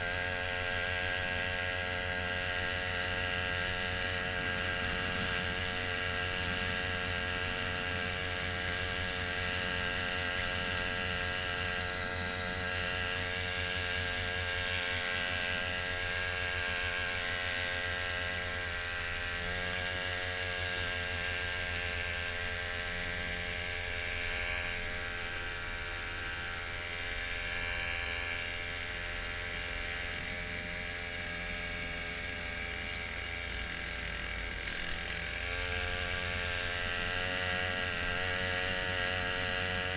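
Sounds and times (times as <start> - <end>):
small motor running: 0.0 - 39.9.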